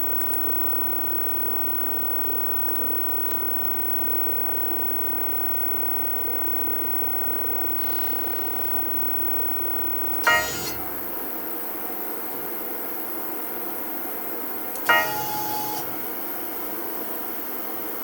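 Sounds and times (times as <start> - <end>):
cnc router hum: 7.9 - 11.4, 14.8 - 16.6.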